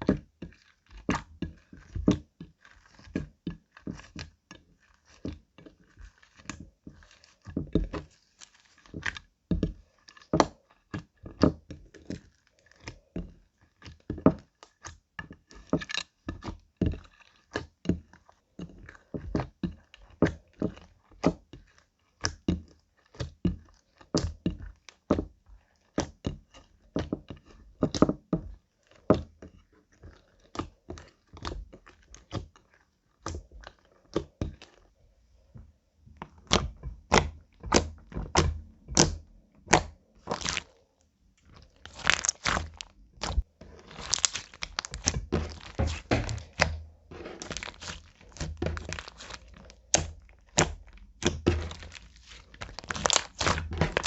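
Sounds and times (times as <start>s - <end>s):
slime popping and clicking: 36.5s - 40.6s, 41.8s - 46.8s, 47.4s - 54.0s.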